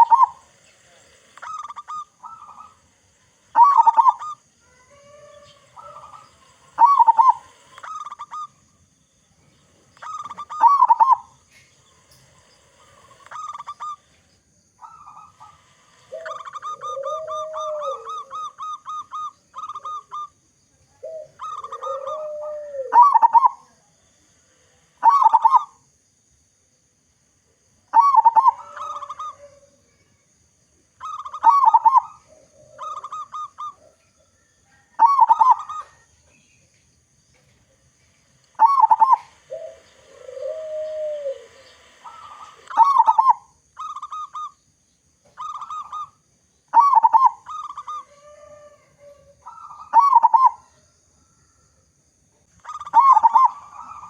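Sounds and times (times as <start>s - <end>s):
lower rising and falling call: 0.0s - 2.8s, 5.0s - 8.6s, 14.8s - 20.4s, 21.0s - 23.7s, 38.5s - 44.6s, 52.6s - 54.0s
dove cooing: 0.0s - 8.6s, 9.6s - 14.2s, 14.8s - 25.8s, 27.9s - 30.2s, 31.0s - 36.6s, 38.6s - 44.6s, 45.2s - 51.6s, 52.5s - 54.0s.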